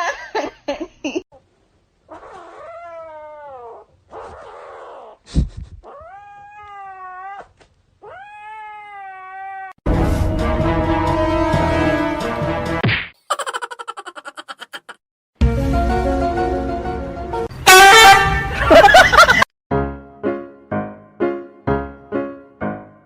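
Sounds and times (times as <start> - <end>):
cat yowling: 2.1 - 5.2, 5.9 - 9.8
music: 9.8 - 12.8, 15.4 - 17.5, 19.7 - 23.0.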